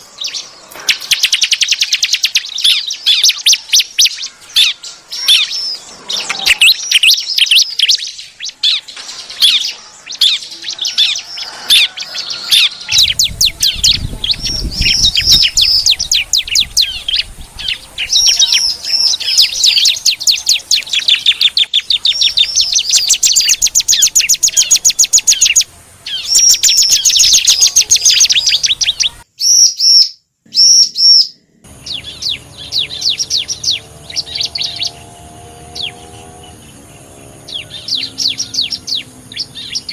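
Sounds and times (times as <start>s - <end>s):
bird chirps and trills: 0.0s - 39.9s.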